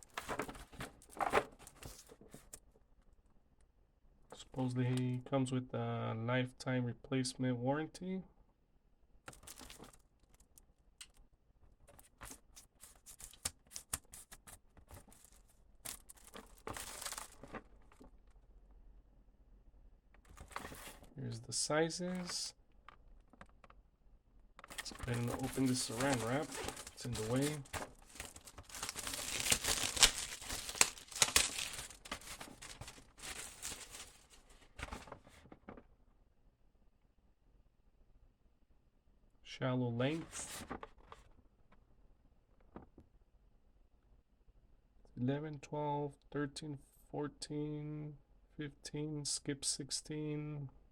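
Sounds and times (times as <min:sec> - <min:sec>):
plastic wrap crinkling and ripping: 0:09.3 - 0:10.5, 0:15.0 - 0:17.7, 0:24.7 - 0:34.5.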